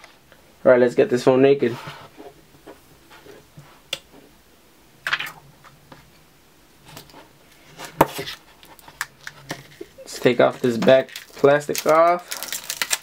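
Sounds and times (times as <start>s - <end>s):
plastic film crinkling: 8.2s - 13.0s.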